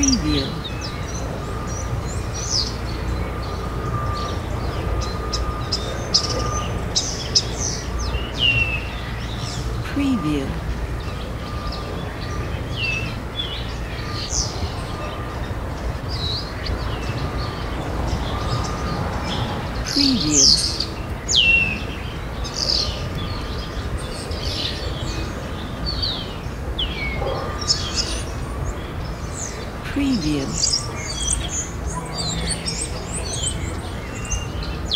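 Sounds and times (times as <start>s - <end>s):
birds chirping and whistling: 10.6s - 29.7s.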